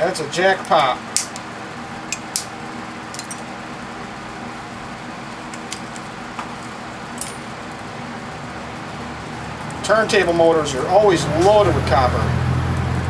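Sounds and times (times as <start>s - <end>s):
steady background hum: 0.0s - 13.0s
small metal parts clicking: 2.1s - 2.5s, 3.1s - 3.5s, 5.5s - 6.1s, 7.2s - 7.5s.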